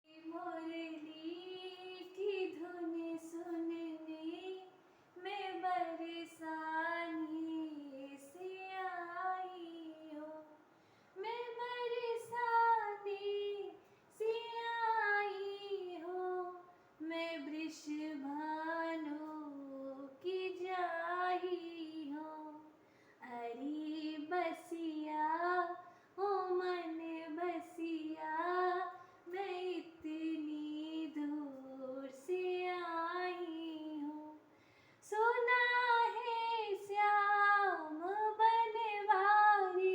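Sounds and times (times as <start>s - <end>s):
person singing devotional song: 0.1s - 39.9s.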